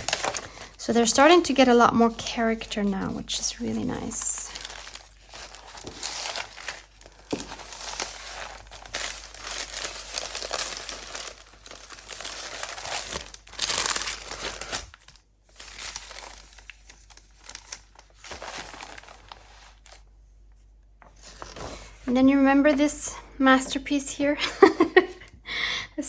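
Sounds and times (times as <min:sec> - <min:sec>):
paper crackle: 0:00.0 - 0:20.1
paper rustling and crinkling: 0:00.0 - 0:20.1, 0:21.0 - 0:22.1.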